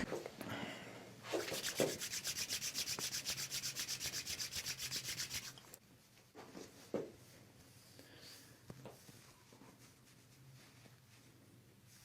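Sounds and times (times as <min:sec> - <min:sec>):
brisk rhythmic rubbing: 0:01.4 - 0:05.6.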